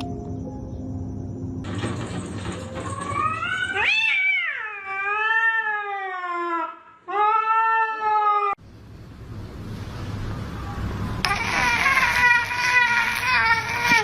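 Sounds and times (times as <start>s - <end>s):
cat yowling: 3.1s - 8.6s, 10.7s - 14.0s.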